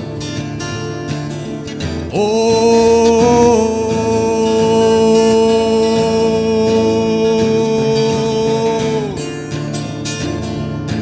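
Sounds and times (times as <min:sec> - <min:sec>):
acoustic guitar: 0:00.0 - 0:11.0
man singing a long note: 0:02.1 - 0:09.3.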